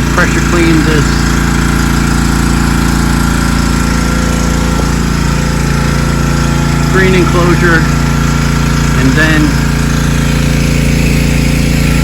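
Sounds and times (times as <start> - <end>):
pressure washer engine drone: 0.0 - 12.0
pressure washer hiss: 0.0 - 12.0.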